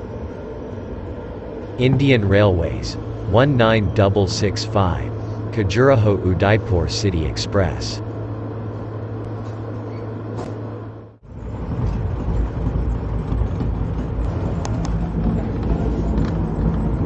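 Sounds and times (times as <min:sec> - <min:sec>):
express train rumbling: 0:00.0 - 0:17.0
steady hum: 0:00.0 - 0:17.0.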